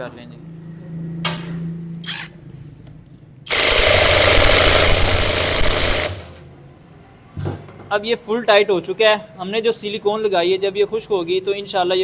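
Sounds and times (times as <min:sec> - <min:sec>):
power tool running: 0:02.0 - 0:02.3, 0:03.5 - 0:06.4.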